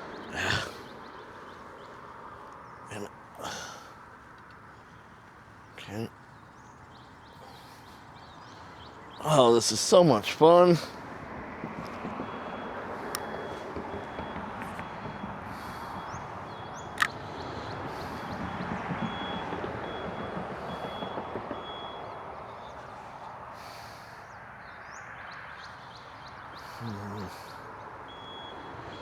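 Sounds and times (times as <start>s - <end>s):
road traffic noise: 0.0s - 29.0s
reversing alarm beeping: 11.7s - 23.0s, 28.0s - 29.0s.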